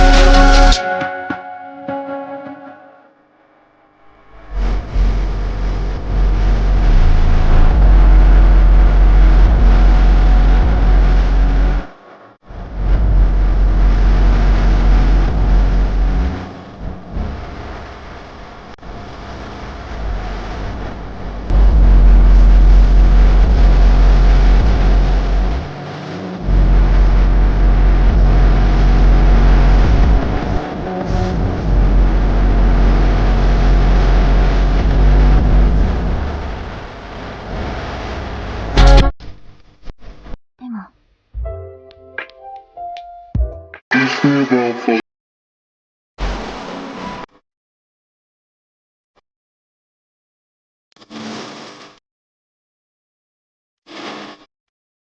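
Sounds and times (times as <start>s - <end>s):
bass-boosted music: 0.0s - 3.0s, 4.2s - 11.9s, 12.5s - 17.8s, 18.8s - 39.2s, 41.4s - 45.0s.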